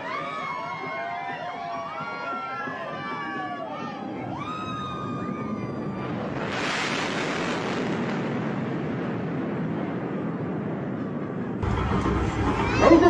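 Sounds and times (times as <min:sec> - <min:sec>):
fighter jet engine roar: 0:03.0 - 0:13.0.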